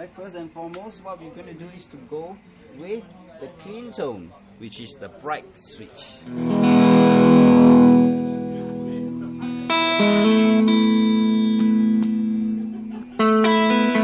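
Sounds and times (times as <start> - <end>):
clean electric guitar chords strummed: 6.3 - 14.0.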